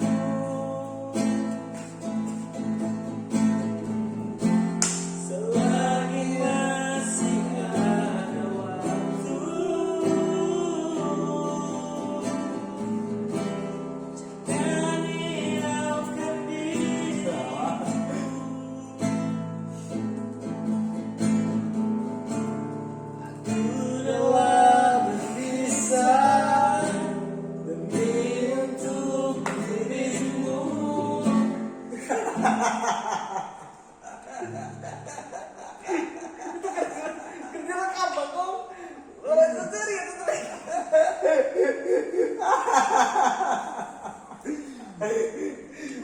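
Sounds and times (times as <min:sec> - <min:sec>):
person singing: 0:00.0 - 0:02.4, 0:05.1 - 0:20.0, 0:23.3 - 0:32.9
guitar accompaniment: 0:00.0 - 0:37.6.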